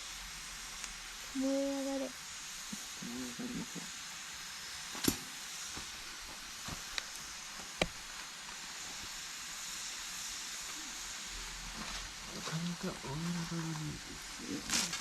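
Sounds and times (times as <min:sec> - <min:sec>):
campfire hiss and crackle: 0:00.0 - 0:15.0
sharp pops from burning wood: 0:06.6 - 0:08.3.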